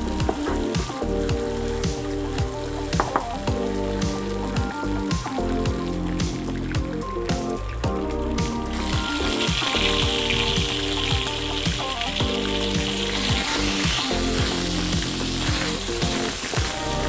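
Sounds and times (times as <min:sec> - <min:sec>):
background music with steady beat: 0:00.0 - 0:17.0
food sizzling in hot oil: 0:00.0 - 0:17.0.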